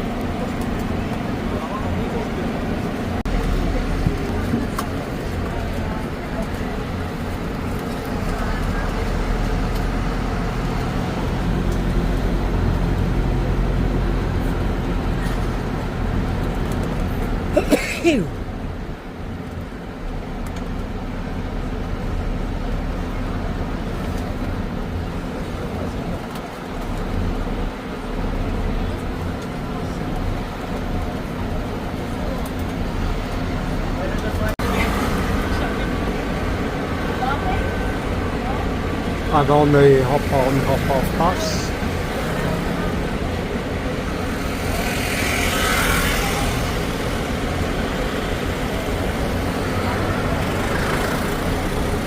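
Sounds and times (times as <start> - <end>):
bus engine humming: 0.0 - 52.0.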